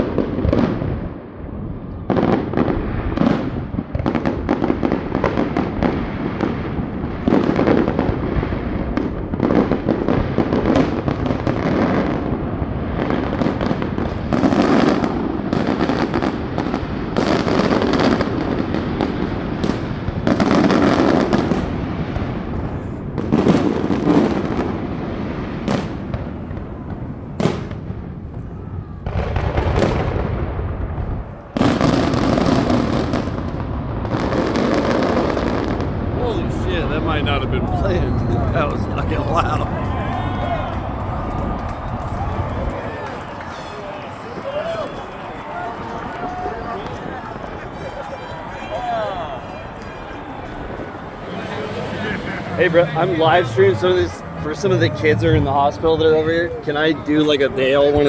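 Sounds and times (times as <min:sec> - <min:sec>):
fireworks bangs and booms: 0:00.0 - 0:58.0
fireworks crackling: 0:00.0 - 0:58.0.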